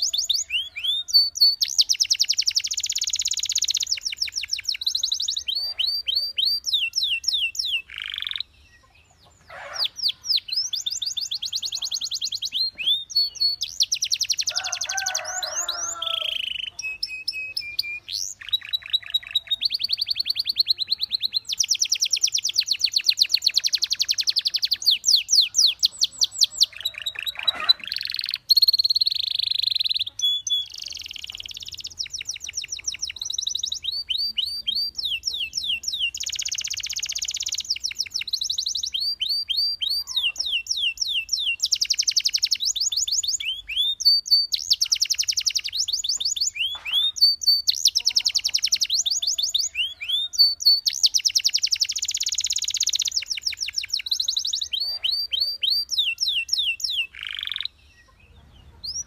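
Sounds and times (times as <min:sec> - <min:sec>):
canary singing trills: 0:00.0 - 0:59.0.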